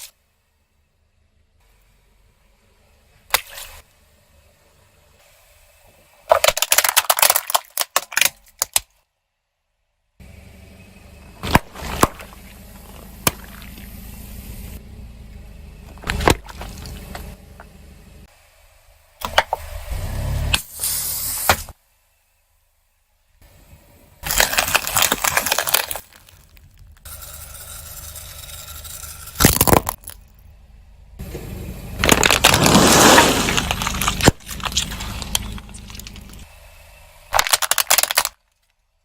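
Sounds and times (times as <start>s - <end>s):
crackling crunches and pops: 6.3s - 9.0s, 15.9s - 17.8s, 24.2s - 27.1s, 32.0s - 36.5s, 37.3s - 38.8s.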